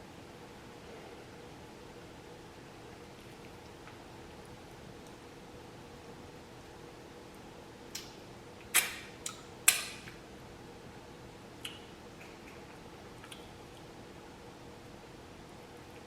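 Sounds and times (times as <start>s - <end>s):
wet mouth smacks while chewing: 11.6s - 13.9s.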